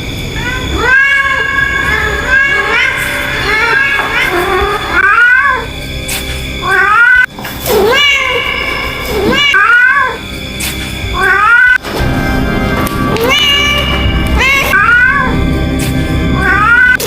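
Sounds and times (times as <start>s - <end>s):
cat meowing: 0.4s - 5.8s, 6.6s - 10.3s, 11.2s - 11.8s, 13.1s - 15.4s, 16.4s - 17.0s.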